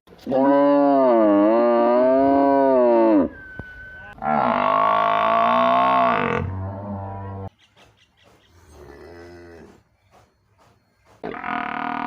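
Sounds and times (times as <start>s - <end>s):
cow mooing: 0.3s - 3.3s, 4.1s - 7.5s, 11.2s - 12.0s.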